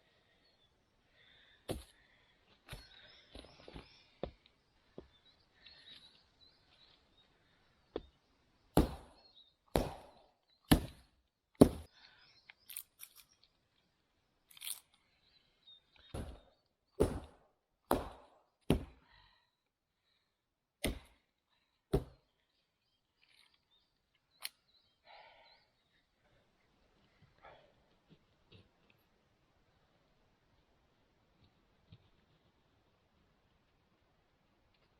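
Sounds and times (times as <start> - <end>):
hatchet chopping wood: 8.7 - 11.9, 16.1 - 16.4, 17.0 - 19.0, 20.8 - 21.2, 21.9 - 22.2.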